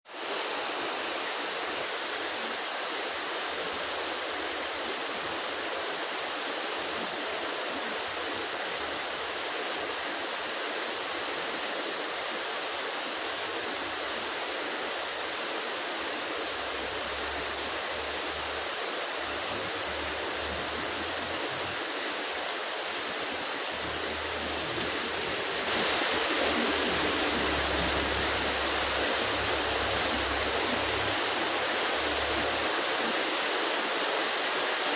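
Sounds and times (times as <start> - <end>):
heavy rain falling: 13.3 - 34.9.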